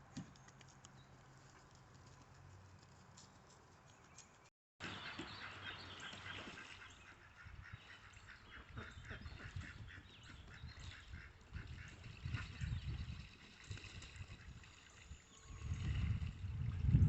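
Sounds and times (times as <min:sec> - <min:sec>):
ducks and goose calling: 0:04.9 - 0:12.5.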